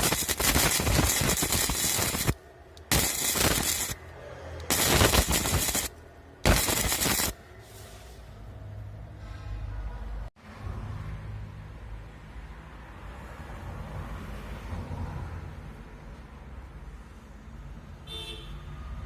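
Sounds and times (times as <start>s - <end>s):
welding arc crackling: 0.0s - 4.0s, 4.7s - 7.4s.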